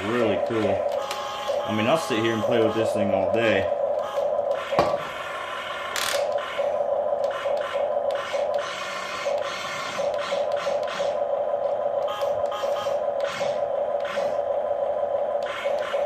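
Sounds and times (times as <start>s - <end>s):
small electric motors whirring: 5.8s - 11.2s, 12.0s - 14.4s, 15.4s - 16.0s.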